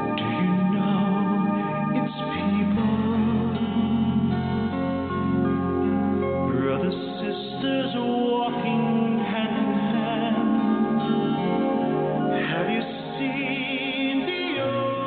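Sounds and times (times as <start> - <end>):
music: 0.0 - 15.0
person singing long notes: 12.4 - 15.0.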